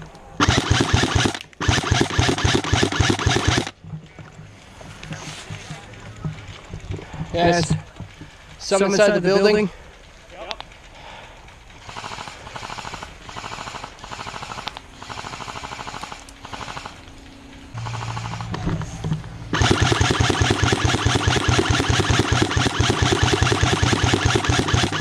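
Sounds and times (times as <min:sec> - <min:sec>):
low hum: 0:00.0 - 0:25.0
airsoft guns firing full-auto: 0:00.4 - 0:03.8, 0:11.8 - 0:17.1, 0:17.8 - 0:18.6, 0:19.5 - 0:25.0.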